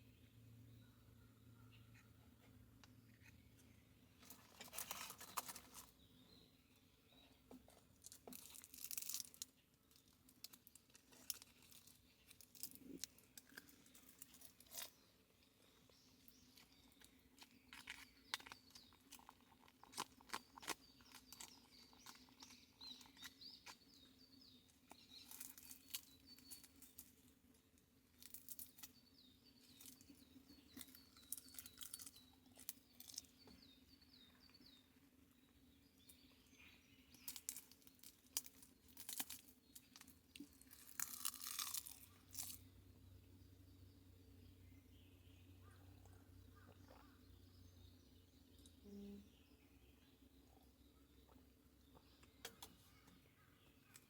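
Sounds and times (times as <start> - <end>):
small bird chirping: 0.0 - 27.3, 28.1 - 54.0
handling clicks and crunches: 4.2 - 6.0, 7.6 - 15.0, 16.5 - 24.1, 29.6 - 33.4, 37.1 - 42.6.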